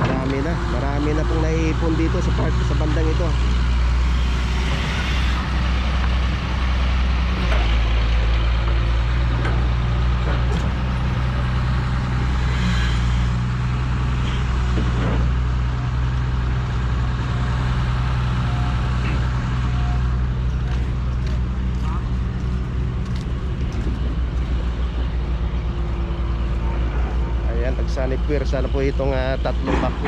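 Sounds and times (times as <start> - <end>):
diesel engines droning: 0.0 - 30.0
digging knocks and clanks: 29.3 - 30.0.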